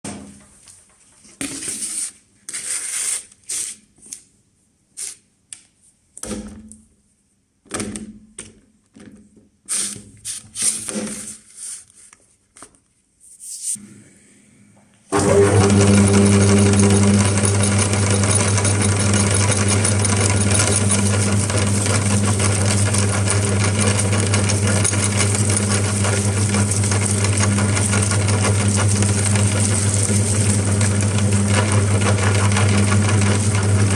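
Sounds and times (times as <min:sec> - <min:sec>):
electric meat grinder motor: 0:15.1 - 0:33.9.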